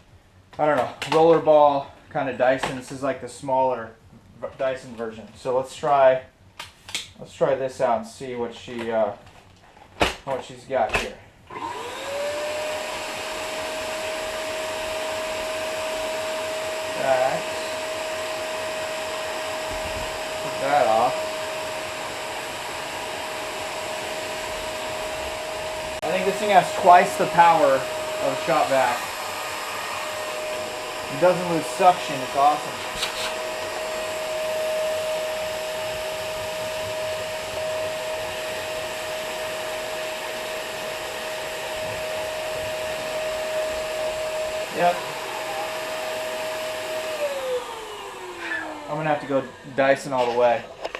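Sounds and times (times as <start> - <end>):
vacuum cleaner running: 11.5 - 50.9.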